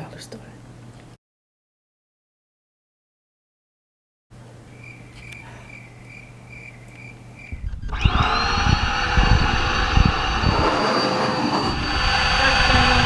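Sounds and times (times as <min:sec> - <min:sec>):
faint hum: 0:04.4 - 0:13.0
vacuum cleaner running: 0:07.9 - 0:13.0.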